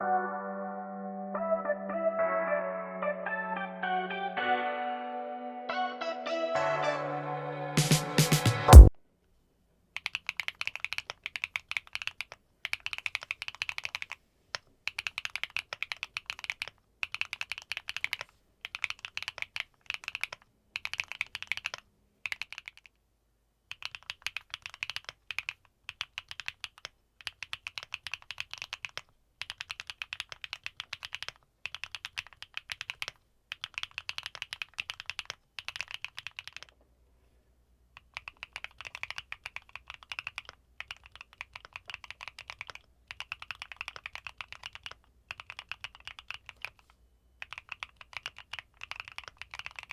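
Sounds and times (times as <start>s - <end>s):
mechanical keyboard typing: 10.0s - 14.2s, 14.9s - 23.0s, 23.7s - 36.8s, 38.0s - 49.9s.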